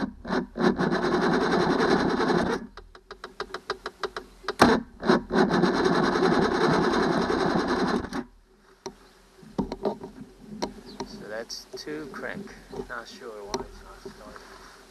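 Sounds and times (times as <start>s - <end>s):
electric starter cranking outboard: 0.0s - 2.8s, 4.6s - 8.3s.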